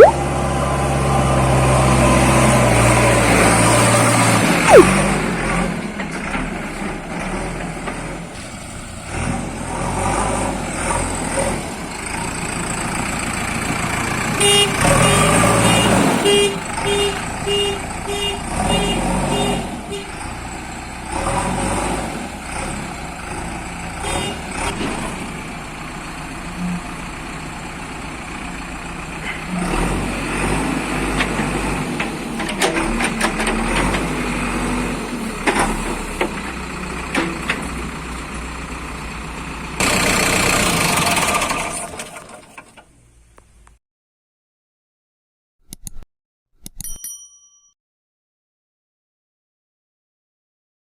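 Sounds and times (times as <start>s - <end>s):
short warning beeps: 4.7s - 4.9s
heavy machinery engine running: 20.2s - 42.8s.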